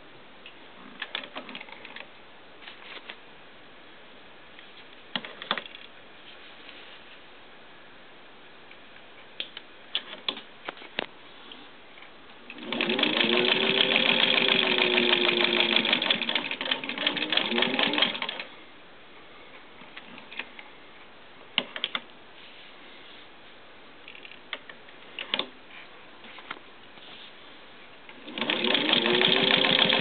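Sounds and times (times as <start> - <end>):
sewing machine motor whine: 12.6 - 18.5, 28.2 - 30.0.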